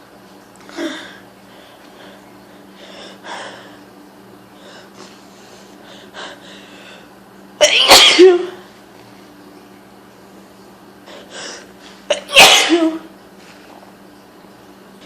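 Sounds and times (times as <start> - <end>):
woman sneezing: 7.6 - 8.6, 12.1 - 13.1.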